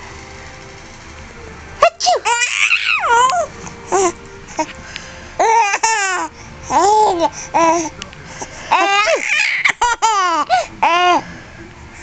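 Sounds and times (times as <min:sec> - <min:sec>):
baby squealing and laughing: 0:02.0 - 0:04.1, 0:08.7 - 0:11.2.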